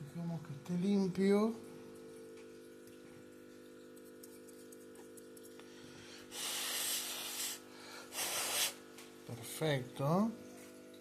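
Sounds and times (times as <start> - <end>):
low multi-tone hum: 0.0 - 11.0
loud hiss: 6.3 - 8.8.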